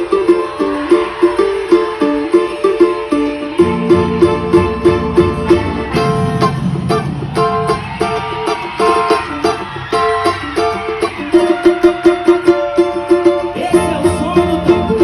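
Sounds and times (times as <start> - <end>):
plucked string instrument: 0.0 - 15.0
low accompaniment: 1.6 - 15.0.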